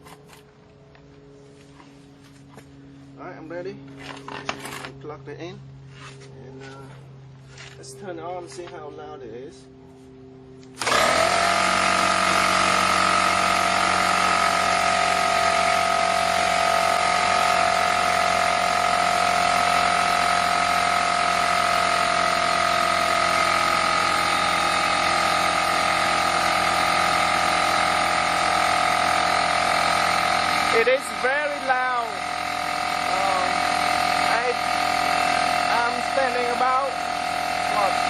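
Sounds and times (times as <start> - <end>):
air compressor running: 0.0 - 5.0, 9.5 - 38.0.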